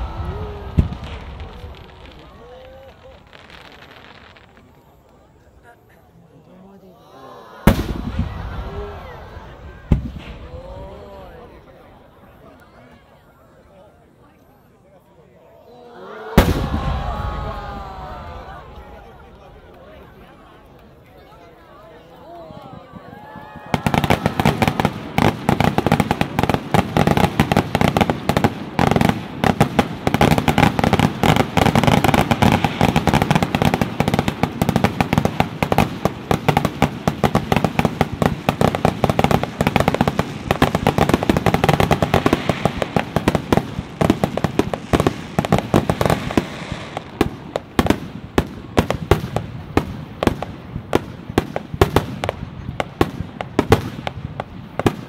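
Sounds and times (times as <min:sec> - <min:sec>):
fireworks bangs and crackles: 0:00.0 - 0:05.7, 0:07.6 - 0:12.6, 0:16.3 - 0:55.0.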